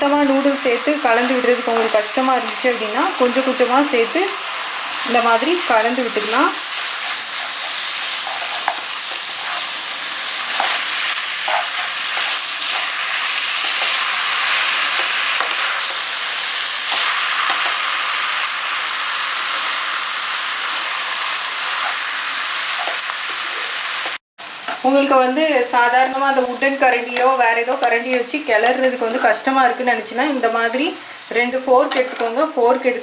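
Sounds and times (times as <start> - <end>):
noodles sizzling in a pan: 0.0 - 33.0.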